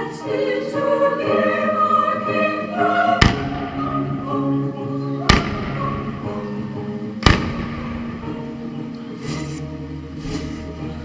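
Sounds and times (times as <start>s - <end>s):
music with singing: 0.0s - 11.0s
firework bangs: 3.2s - 3.7s, 5.3s - 5.9s, 7.2s - 8.0s.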